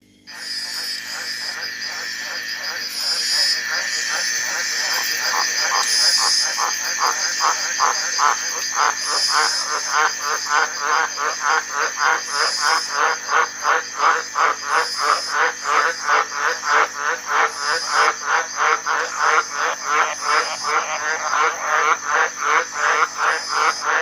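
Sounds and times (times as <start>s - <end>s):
high-pitched whine: 0.0s - 16.6s
tree frogs croaking: 0.2s - 24.0s
bright chirp: 0.3s - 6.5s.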